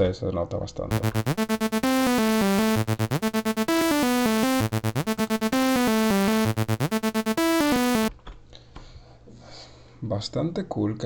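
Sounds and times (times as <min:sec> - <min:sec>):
synthesizer loop melody: 0:00.9 - 0:08.1.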